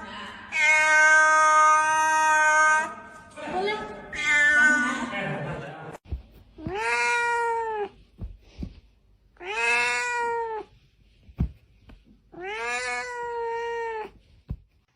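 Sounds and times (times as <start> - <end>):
cat meowing: 0.5 - 3.0, 4.1 - 4.9, 6.6 - 8.0, 9.4 - 10.8, 12.3 - 14.2.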